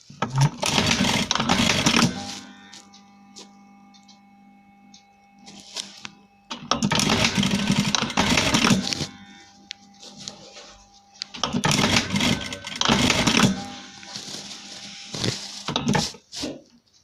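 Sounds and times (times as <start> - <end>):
sewing machine stitching: 0.2 - 2.4, 6.8 - 9.1, 11.4 - 14.3
faint steady hum: 2.1 - 15.8.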